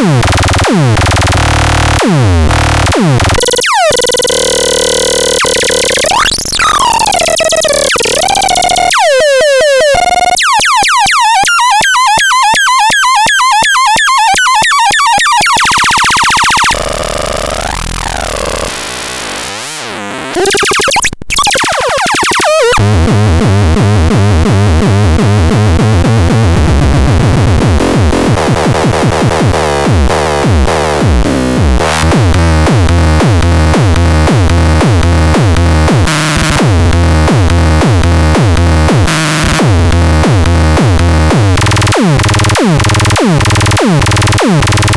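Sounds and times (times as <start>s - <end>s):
rapid ticking: 0.0s - 9.0s, 31.8s - 44.9s
synthesizer noises: 0.0s - 23.0s, 27.8s - 44.9s.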